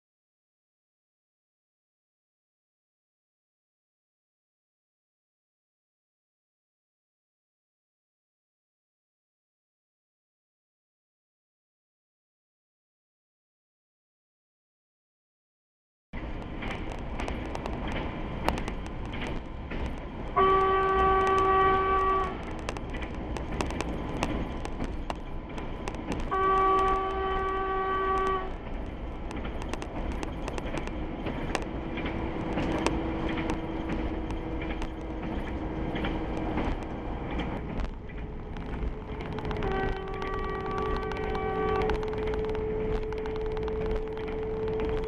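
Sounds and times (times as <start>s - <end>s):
train running noise with clicks: 16.2s - 45.0s
train horn blasts: 20.4s - 22.6s, 26.2s - 28.6s, 39.3s - 45.0s.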